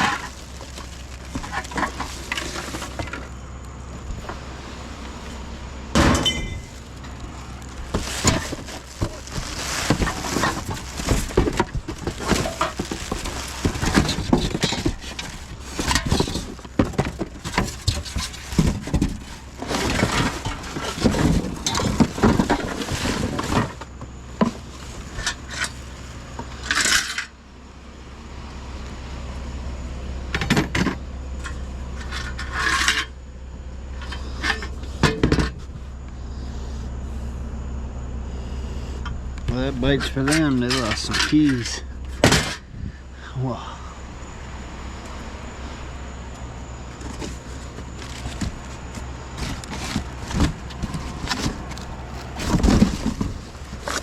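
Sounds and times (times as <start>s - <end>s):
scrap metal clanking: 0.0s - 3.5s, 4.1s - 27.4s, 30.4s - 33.2s, 33.9s - 35.8s, 38.3s - 42.8s, 46.9s - 54.0s
low vehicle engine hum: 0.0s - 54.0s.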